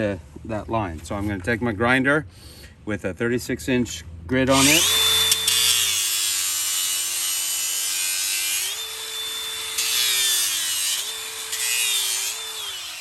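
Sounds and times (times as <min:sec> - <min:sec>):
angle grinder whine: 0:04.5 - 0:13.0.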